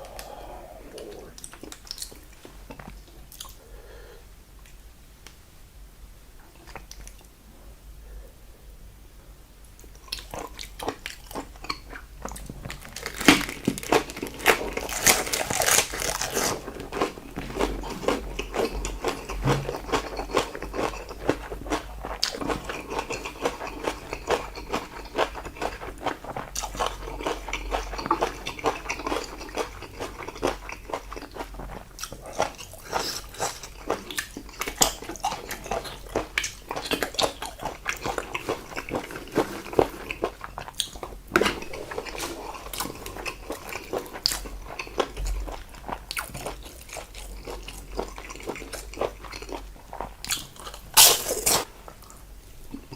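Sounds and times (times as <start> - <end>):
wet chewing crunches: 10.0 - 52.2.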